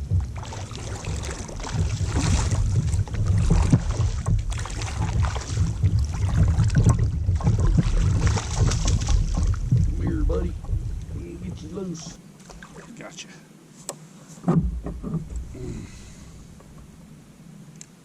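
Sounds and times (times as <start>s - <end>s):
wind buffeting microphone: 0.0s - 12.2s
water splashing: 0.0s - 13.4s
knocks against kayak hull: 1.1s - 11.3s, 14.4s - 15.6s.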